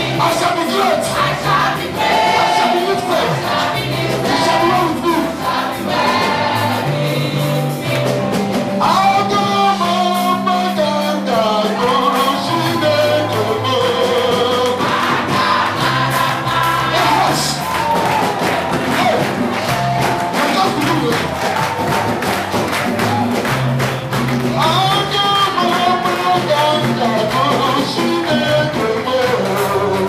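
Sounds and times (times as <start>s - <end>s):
bass line: 0.0s - 30.0s
choir singing gospel: 0.0s - 30.0s
drums: 0.0s - 30.0s.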